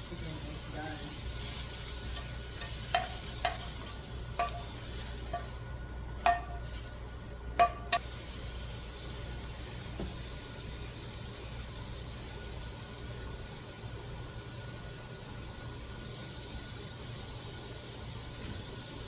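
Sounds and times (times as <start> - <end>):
chicken sizzling in pan: 0.0 - 19.0
utensil clinking on frying pan: 1.8 - 5.6, 6.2 - 7.0, 7.6 - 8.0.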